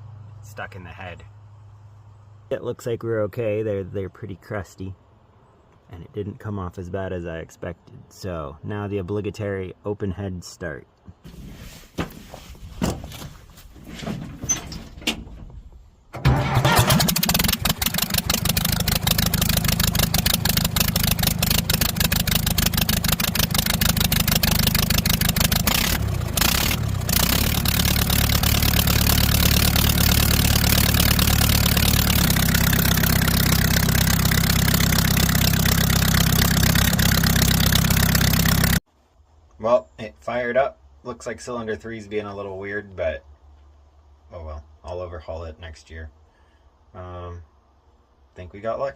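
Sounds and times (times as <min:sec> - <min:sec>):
backhoe engine running loudly: 0:16.2 - 0:38.8.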